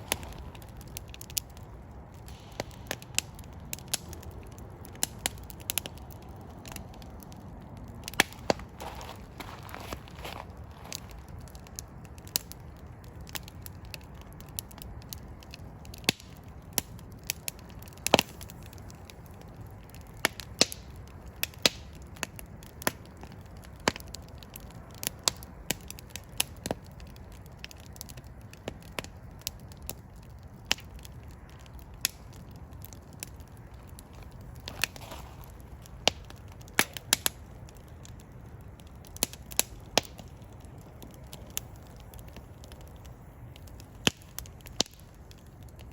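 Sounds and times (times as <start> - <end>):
fireplace fire crackling: 0.0 - 45.9.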